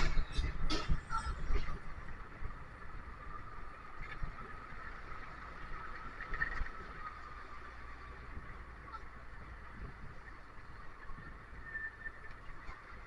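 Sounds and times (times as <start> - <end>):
bus engine and road rumble: 0.0 - 13.0
constant whine: 0.0 - 13.0.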